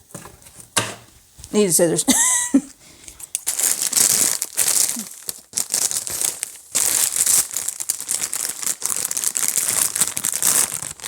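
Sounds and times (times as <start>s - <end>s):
plastic bag crinkling: 3.3s - 11.0s.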